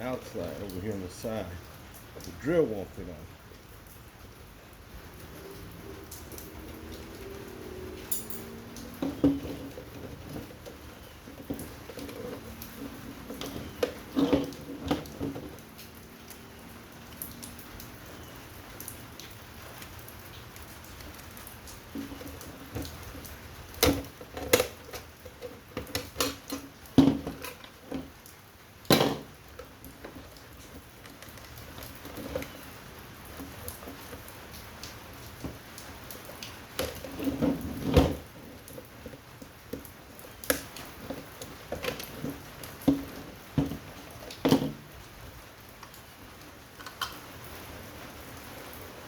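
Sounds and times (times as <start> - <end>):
rain hissing: 0.0 - 49.0
metal and plastic parts clattering: 8.1 - 15.6, 23.8 - 28.1, 36.8 - 44.8.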